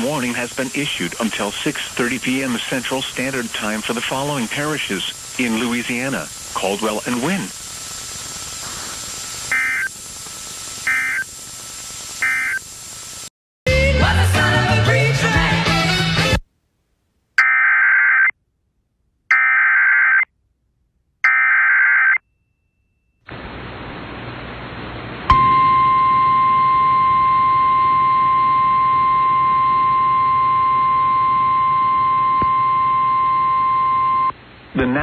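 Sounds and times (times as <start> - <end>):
buzzy digital data tones: 0.0 - 12.9
radio hiss: 0.0 - 13.3, 23.3 - 25.3, 34.2 - 35.0
steady warning alarm tone: 9.5 - 10.0, 10.8 - 11.3, 12.2 - 12.7, 17.4 - 18.3, 19.3 - 20.3, 21.2 - 22.2.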